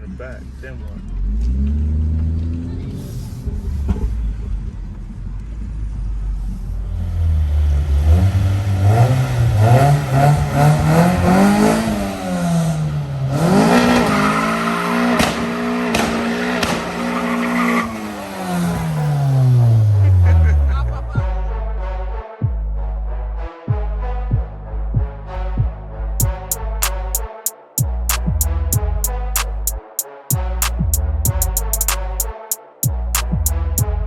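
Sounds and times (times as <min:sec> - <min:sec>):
car engine revving: 0:00.0 - 0:21.7.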